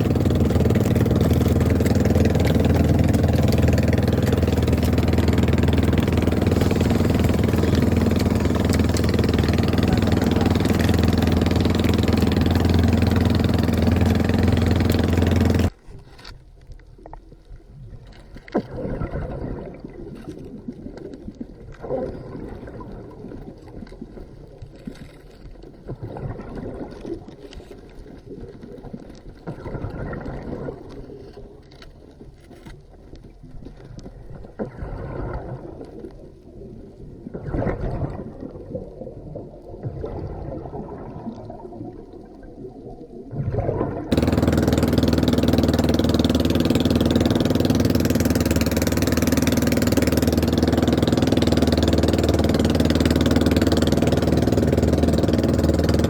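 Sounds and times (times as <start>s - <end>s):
boat engine running: 0.0s - 15.8s, 43.3s - 56.0s
water sloshing and gurgling: 0.0s - 56.0s.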